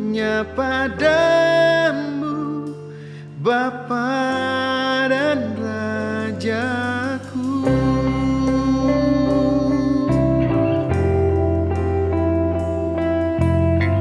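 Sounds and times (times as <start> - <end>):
person singing: 0.0 - 14.0
bass line: 5.1 - 14.0
guitar melody: 6.8 - 14.0.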